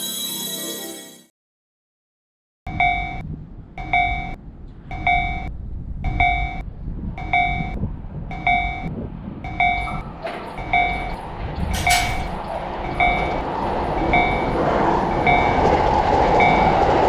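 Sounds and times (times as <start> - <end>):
railroad crossing bell ringing: 2.7 - 3.2, 3.8 - 5.5, 6.1 - 6.6, 7.2 - 17.0
approaching train: 2.7 - 17.0
low rumble: 2.7 - 17.0.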